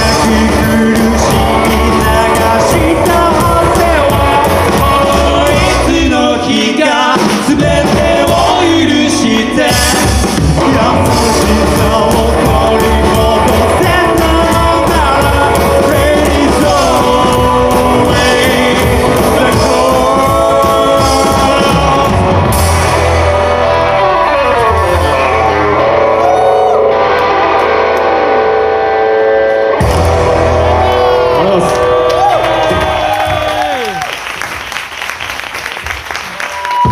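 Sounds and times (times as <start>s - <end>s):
person singing: 0.0s - 27.4s
guitar: 0.0s - 34.2s
drums: 0.0s - 36.9s.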